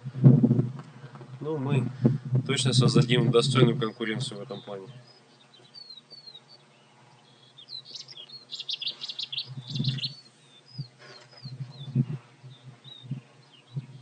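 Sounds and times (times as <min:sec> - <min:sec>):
low thumps: 0:00.0 - 0:05.1, 0:10.8 - 0:14.0
small birds chirping: 0:00.9 - 0:14.0.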